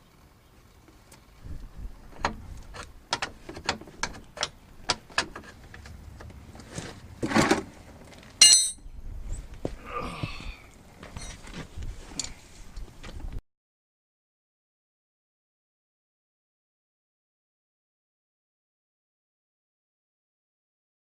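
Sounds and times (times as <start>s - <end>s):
scraping rustle: 5.0s - 8.4s
metal tools clicking: 8.4s - 8.8s
ringing metallic clink: 8.4s - 8.9s.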